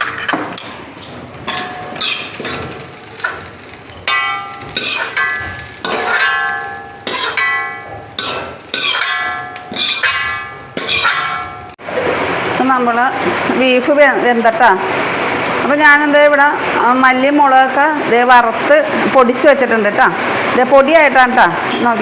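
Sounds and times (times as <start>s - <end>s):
spoon knocking metal cookware: 4.0s - 11.7s.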